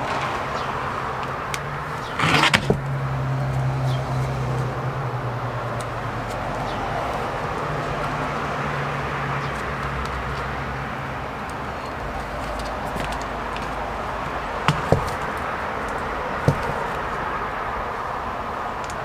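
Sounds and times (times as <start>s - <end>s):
sharp knocks: 1.8s - 3.1s, 14.7s - 15.4s, 16.4s - 17.2s.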